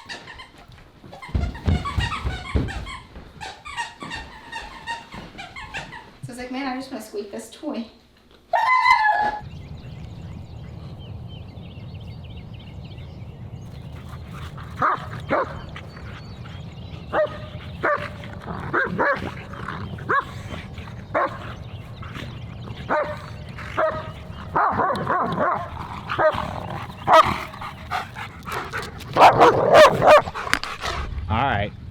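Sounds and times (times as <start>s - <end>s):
steady low hum: 9.4s - 31.9s
dog barking and whining: 14.5s - 30.9s.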